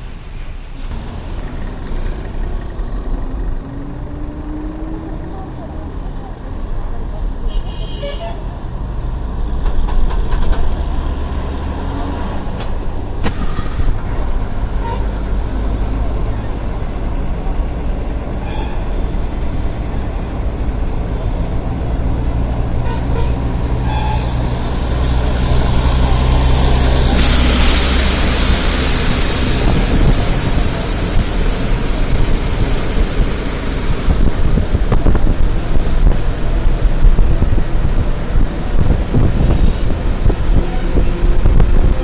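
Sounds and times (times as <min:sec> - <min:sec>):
vehicle engine humming: 0:11.0 - 0:42.0
loud hiss: 0:13.2 - 0:14.1, 0:24.6 - 0:40.6.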